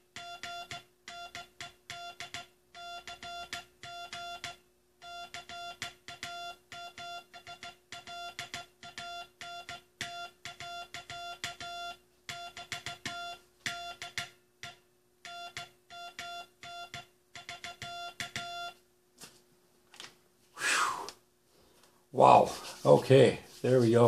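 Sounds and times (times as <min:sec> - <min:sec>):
morse code sidetone beeps: 0:00.2 - 0:18.8.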